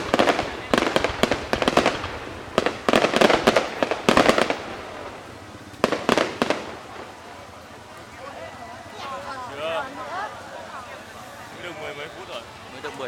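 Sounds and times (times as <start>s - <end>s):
echoing rumble: 0.0s - 7.5s
fireworks bangs and crackles: 0.0s - 8.2s.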